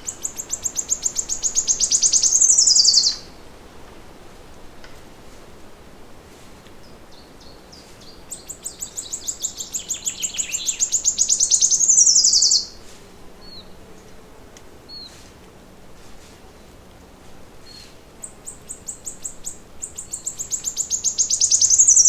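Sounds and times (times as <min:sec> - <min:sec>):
faint bird chirps: 0:00.0 - 0:03.3, 0:07.1 - 0:12.8, 0:17.6 - 0:22.0
songbird trilling: 0:00.0 - 0:03.3, 0:07.1 - 0:12.8, 0:17.7 - 0:22.0.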